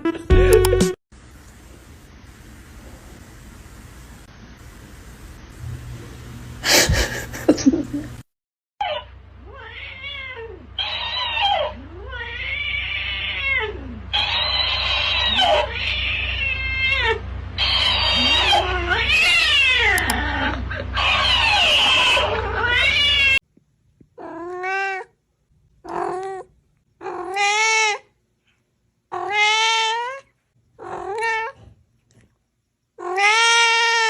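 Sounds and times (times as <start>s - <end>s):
cat yowling: 8.8s - 23.4s, 27.0s - 28.1s, 29.1s - 31.6s, 33.0s - 34.0s.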